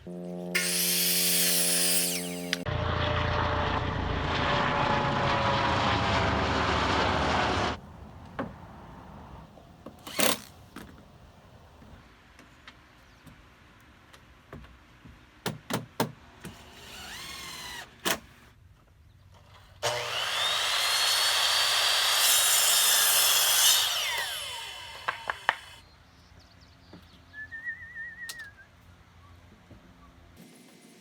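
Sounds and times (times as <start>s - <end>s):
power saw cutting board: 0.4s - 7.8s, 19.8s - 25.8s.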